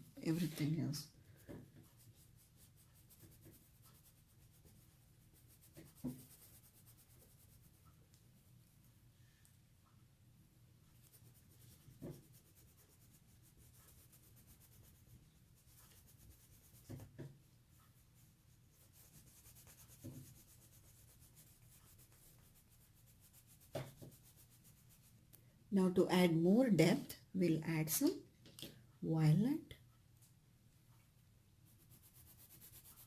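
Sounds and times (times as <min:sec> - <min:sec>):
pencil scratching on paper: 0:00.1 - 0:08.0, 0:10.8 - 0:25.2, 0:31.7 - 0:33.0.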